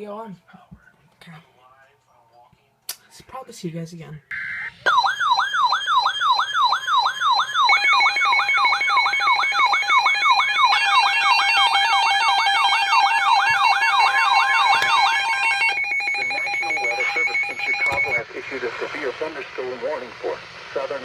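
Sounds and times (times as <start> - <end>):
falling siren-like alarm tone: 4.3 - 18.2
fast pulsing beep: 4.4 - 18.3.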